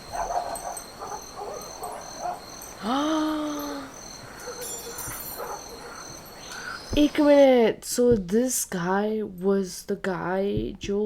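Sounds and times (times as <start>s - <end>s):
crickets chirping: 0.0s - 7.5s.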